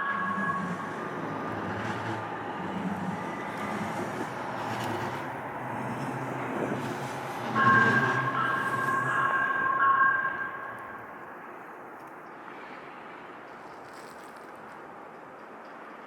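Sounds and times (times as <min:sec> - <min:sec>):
steady two-note tone: 0:00.0 - 0:04.1, 0:07.5 - 0:11.3
light rail train rumbling: 0:00.0 - 0:16.0.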